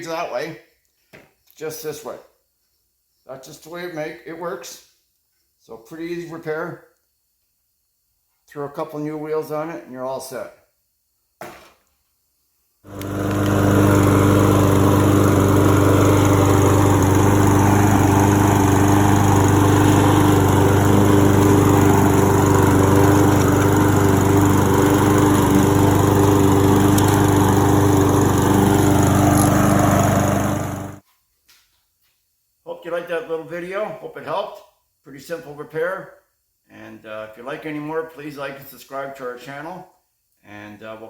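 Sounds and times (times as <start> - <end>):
lawn mower engine running: 12.9 - 31.0.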